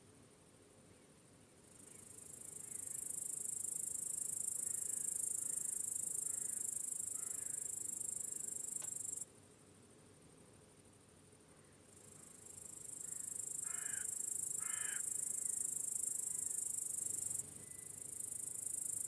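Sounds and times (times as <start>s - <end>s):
cricket trilling: 1.8s - 9.2s, 11.9s - 19.0s.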